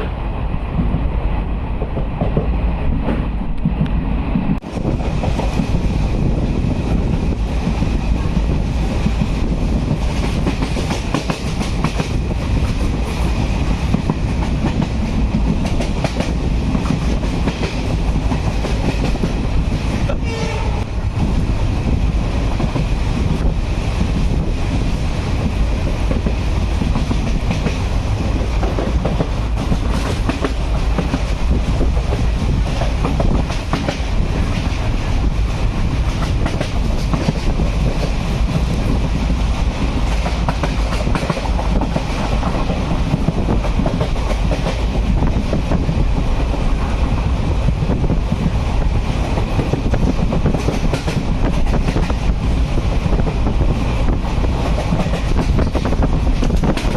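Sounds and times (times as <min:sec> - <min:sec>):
train rumbling: 0:00.0 - 0:56.9.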